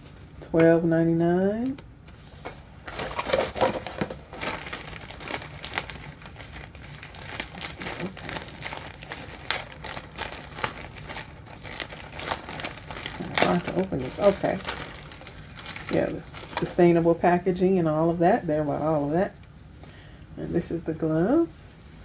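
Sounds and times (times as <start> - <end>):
packaging crinkling and rustling: 1.6 - 17.1.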